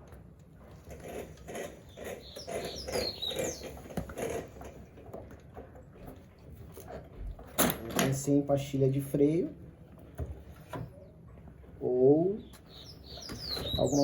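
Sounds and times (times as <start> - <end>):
motorcycle chain squeaking and scraping: 0.6 - 5.2, 12.7 - 14.0.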